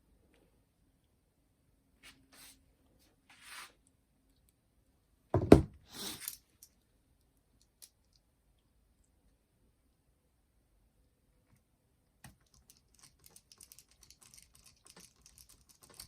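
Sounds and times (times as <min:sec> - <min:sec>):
light rubs and scrapes: 0:02.0 - 0:03.8.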